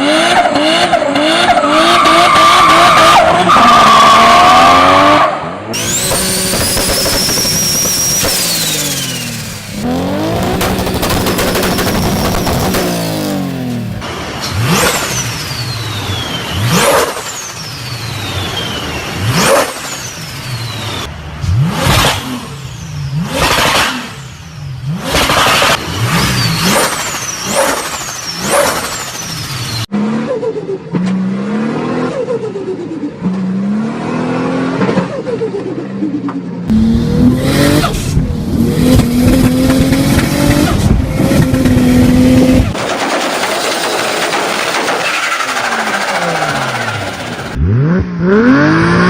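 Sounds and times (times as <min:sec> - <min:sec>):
car engines revving: 0:00.0 - 0:49.0.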